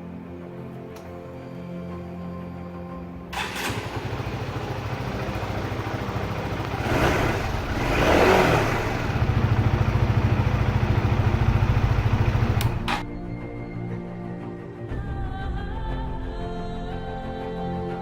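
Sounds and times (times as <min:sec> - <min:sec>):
motorcycle engine idling and revving: 0:03.4 - 0:13.1.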